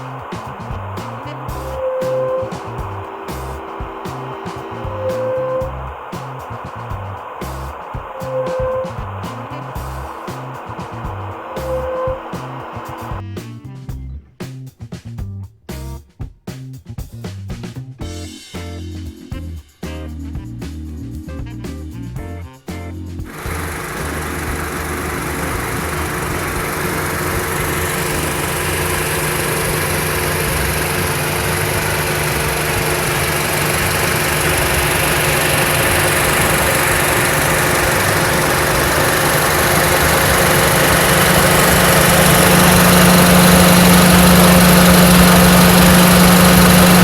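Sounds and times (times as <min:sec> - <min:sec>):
car engine running: 0:00.0 - 0:13.2, 0:23.3 - 0:47.0.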